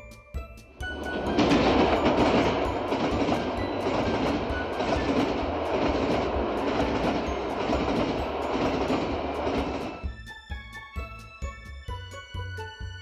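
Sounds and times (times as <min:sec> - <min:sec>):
high-speed train rumbling: 0:00.8 - 0:10.1.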